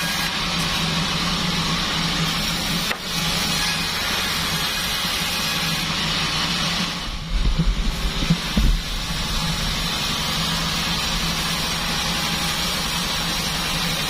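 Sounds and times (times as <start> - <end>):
sawmill machine humming: 0.0 - 14.0
low irregular thumps: 7.1 - 9.4.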